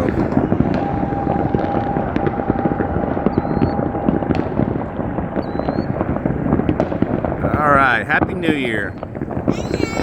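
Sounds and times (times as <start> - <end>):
steady whistle-like tone: 0.0 - 6.0
firecrackers crackling and popping: 0.0 - 10.0
fireworks booming: 0.0 - 10.0.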